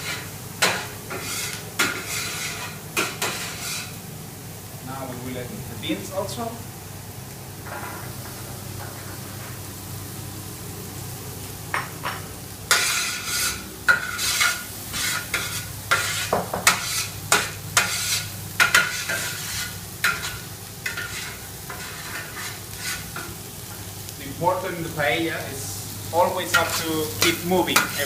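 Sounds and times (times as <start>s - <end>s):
quick stirring strokes in a pan: 0.0s - 4.0s, 12.7s - 23.3s
vegetables sizzling in a pan: 0.0s - 28.0s.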